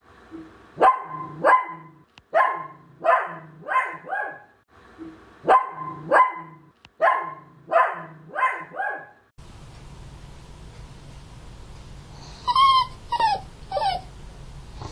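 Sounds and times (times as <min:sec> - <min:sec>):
dog barking high-pitched: 0:00.8 - 0:04.5, 0:05.4 - 0:09.2
steady hiss: 0:09.4 - 0:14.9.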